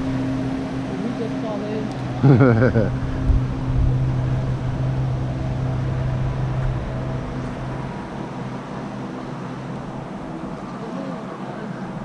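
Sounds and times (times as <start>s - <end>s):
passing engine hum: 0.0s - 12.0s.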